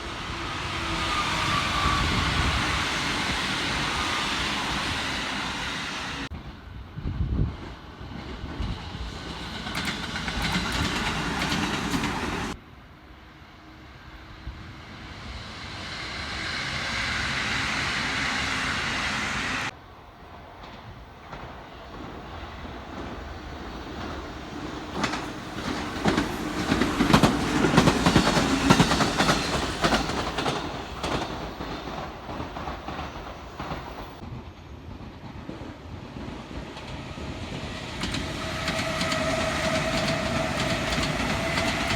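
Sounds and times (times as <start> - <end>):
train wheels clattering over rail joints: 8.1 - 12.6, 24.9 - 41.9.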